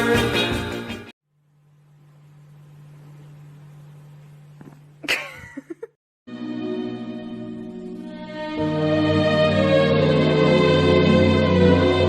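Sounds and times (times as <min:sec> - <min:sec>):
soft ambient chords: 0:06.6 - 0:12.0.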